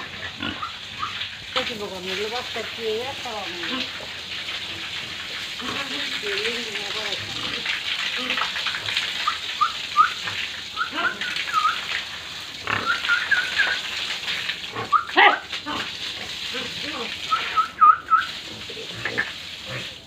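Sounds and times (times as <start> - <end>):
pig squealing: 0.0 - 1.2, 9.2 - 11.9, 12.6 - 13.9, 14.7 - 15.9
pigs grunting: 0.0 - 1.2, 4.7 - 9.5, 12.6 - 13.7
pigs squeaking: 0.0 - 1.3, 5.6 - 12.0, 12.6 - 15.9.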